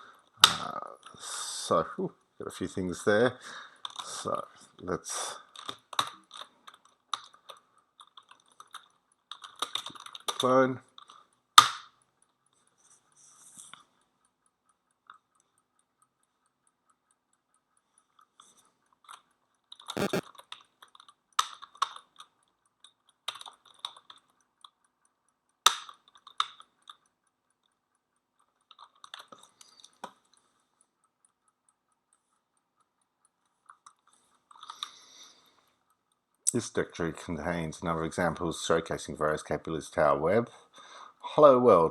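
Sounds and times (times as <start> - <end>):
keyboard typing clicks: 20.0 - 20.2.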